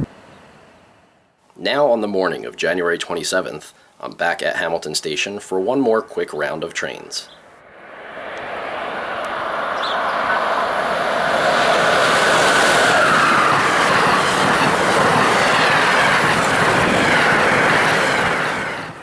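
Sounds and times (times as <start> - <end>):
passenger train passing: 6.0 - 19.0
faint whine sliding down: 7.5 - 13.4.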